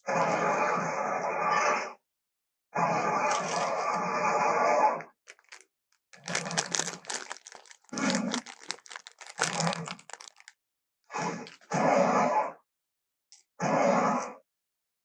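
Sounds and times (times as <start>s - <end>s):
crackling growls and rasps: 3.0s - 10.5s, 11.2s - 12.2s.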